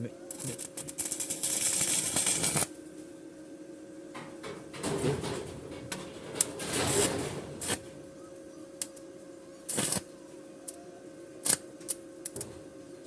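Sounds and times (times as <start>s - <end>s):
welding arc crackling and hissing: 0.3s - 2.8s, 6.8s - 7.9s, 9.7s - 10.1s.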